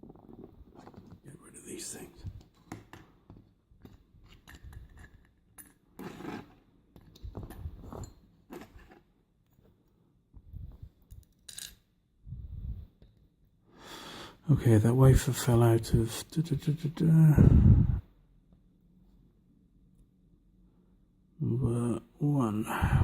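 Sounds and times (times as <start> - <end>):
small metal parts clinking: 11.1 - 11.9.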